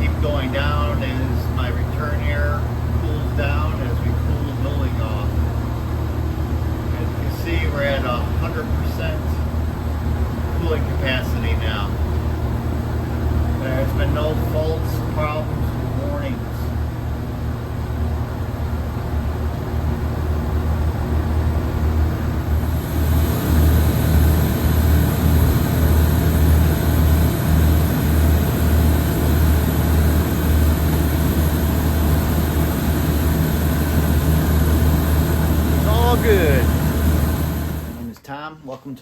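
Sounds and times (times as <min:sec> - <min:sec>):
air conditioner unit humming: 0:00.0 - 0:39.0
rushing air: 0:22.5 - 0:38.0.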